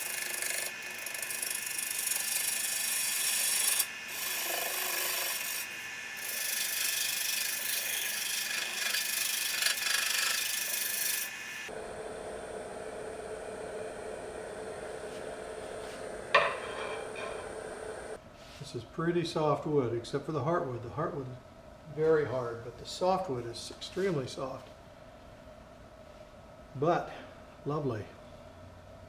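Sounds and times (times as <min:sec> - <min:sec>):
tool scraping wood on lathe: 0:00.0 - 0:11.3
lathe low steady hum: 0:00.0 - 0:18.2.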